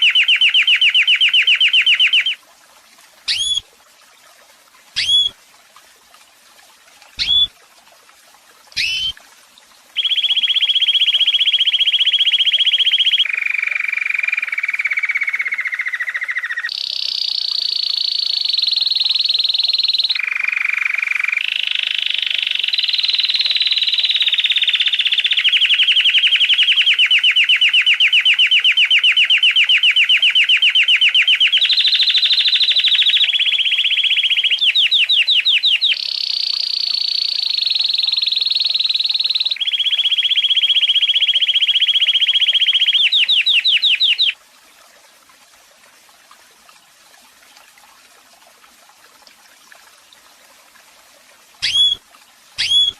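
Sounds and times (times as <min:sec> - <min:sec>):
canary singing trills: 0:00.0 - 0:02.4, 0:03.3 - 0:03.6, 0:05.0 - 0:05.3, 0:07.2 - 0:07.5, 0:08.8 - 0:09.2, 0:10.0 - 0:18.6, 0:19.2 - 0:44.4, 0:51.6 - 0:52.0, 0:52.6 - 0:52.9.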